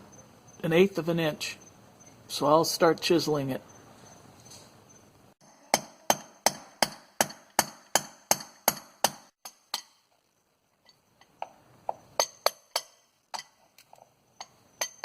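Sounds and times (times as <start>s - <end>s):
hammer striking wood chisel: 5.4s - 9.9s.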